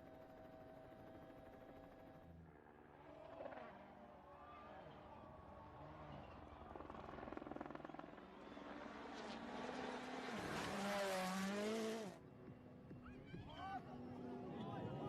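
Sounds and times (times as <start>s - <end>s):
rally car engine approaching: 2.5s - 13.0s.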